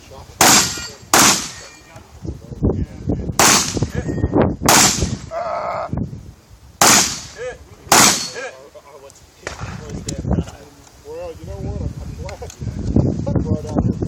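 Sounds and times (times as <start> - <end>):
shotgun shots: 0.4 - 1.7, 3.4 - 3.9, 4.7 - 5.2, 6.8 - 8.5.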